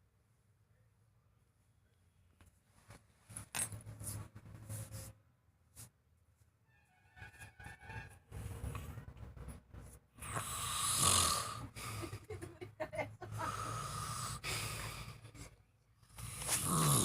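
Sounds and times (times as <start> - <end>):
person snoring: 10.2 - 12.1, 13.3 - 15.3, 16.2 - 17.0.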